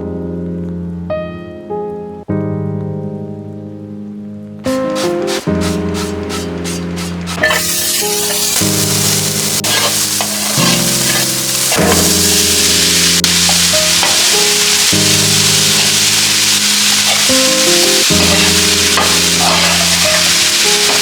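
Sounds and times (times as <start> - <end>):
background music chords: 4.6 - 19.4
food sizzling in a pan: 4.7 - 21.0.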